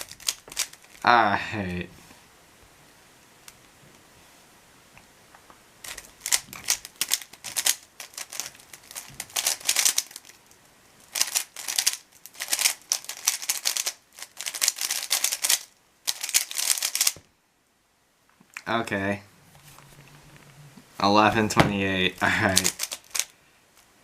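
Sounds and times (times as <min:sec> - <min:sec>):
puzzle cube clicking: 0:05.9 - 0:10.2, 0:11.1 - 0:17.2, 0:22.5 - 0:23.3.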